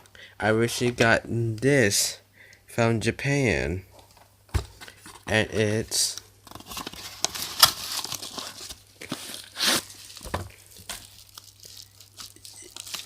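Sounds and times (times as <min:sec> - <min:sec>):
packaging tearing and crinkling: 0:06.5 - 0:13.0.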